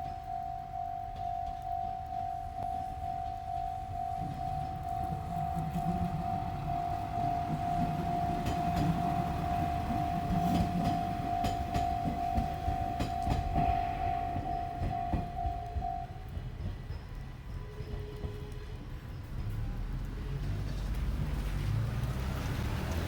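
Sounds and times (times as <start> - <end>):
level crossing alarm dinging: 0.0 - 16.2
diesel train rumbling: 0.0 - 23.0
train wheels clicking: 0.0 - 23.0.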